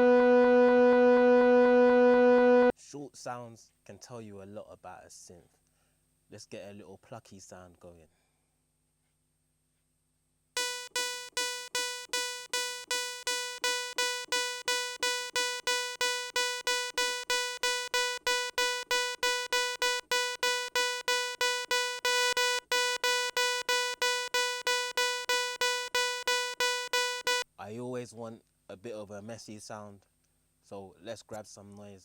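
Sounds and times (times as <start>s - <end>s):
plucky synthesizer note: 10.6s - 27.4s.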